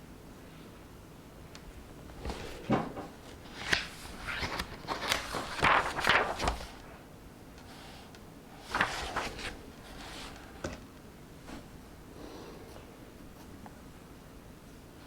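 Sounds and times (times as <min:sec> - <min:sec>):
book pages turning: 0:02.1 - 0:06.9, 0:08.6 - 0:10.6.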